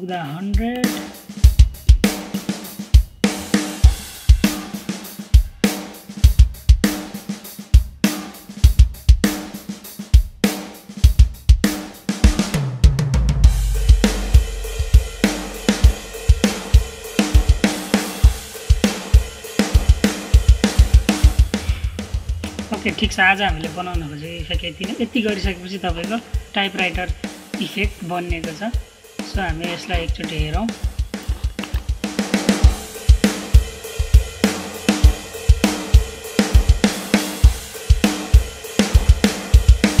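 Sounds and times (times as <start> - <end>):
drum-kit beat: 0.0 - 40.0
deep held bass note: 21.3 - 26.4.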